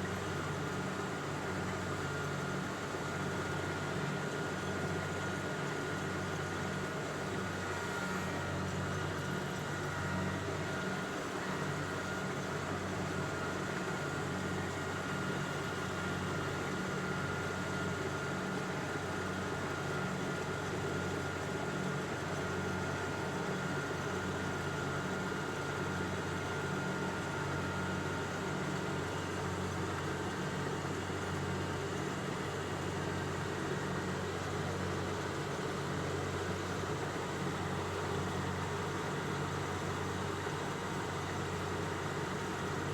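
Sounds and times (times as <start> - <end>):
engine running steadily: 0.0 - 42.9.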